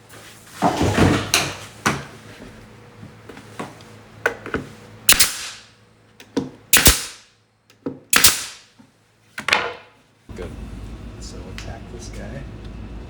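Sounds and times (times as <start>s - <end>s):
hammer driving nails into wood: 5.1s - 5.6s, 6.8s - 7.2s, 8.1s - 8.6s.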